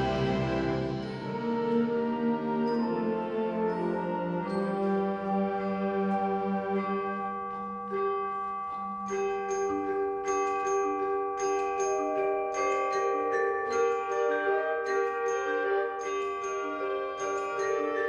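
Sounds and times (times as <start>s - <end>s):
wind ensemble playing chords: 0.0s - 8.8s, 13.8s - 18.0s
mallet percussion notes: 0.0s - 18.0s.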